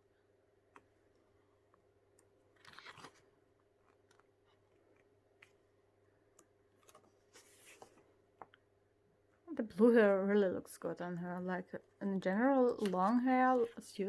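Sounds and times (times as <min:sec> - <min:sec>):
paper page turning: 0:02.5 - 0:03.3, 0:06.8 - 0:08.0, 0:12.6 - 0:13.8.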